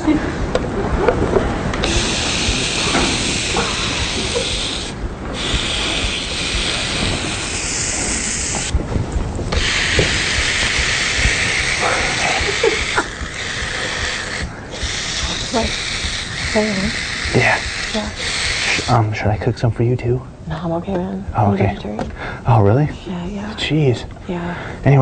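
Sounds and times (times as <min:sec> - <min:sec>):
meat sizzling on grill: 0:09.6 - 0:18.9.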